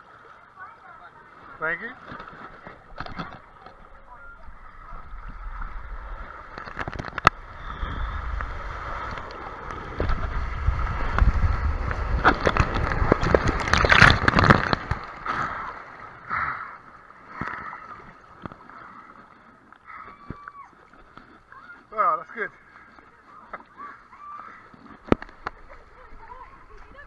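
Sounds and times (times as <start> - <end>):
water rushing and splashing: 0.0 - 27.0
wind rumble on microphone: 3.9 - 15.1.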